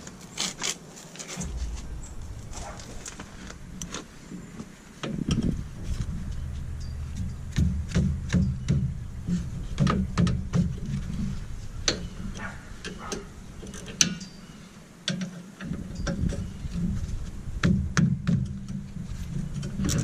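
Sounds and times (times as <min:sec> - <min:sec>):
steady low hum: 0:01.4 - 0:13.8.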